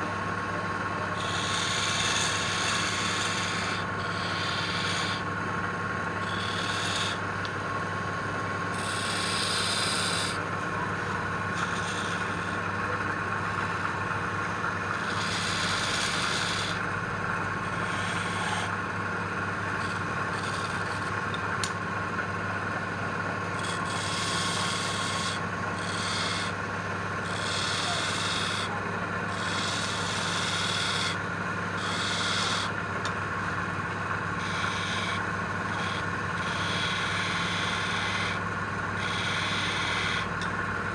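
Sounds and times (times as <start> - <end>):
electric motor hum: 0.0 - 40.9
abrasive tool scratching wood: 1.1 - 5.3, 6.2 - 7.2, 8.7 - 10.4, 11.5 - 12.7, 14.9 - 16.9, 17.6 - 18.8, 19.8 - 21.7, 23.5 - 26.6, 27.2 - 33.2, 34.1 - 40.5.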